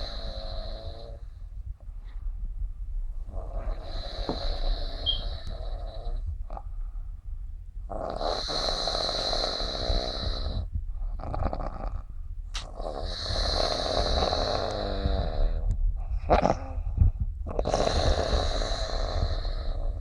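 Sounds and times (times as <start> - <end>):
snoring with nasal whistle: 3.8 - 6.1.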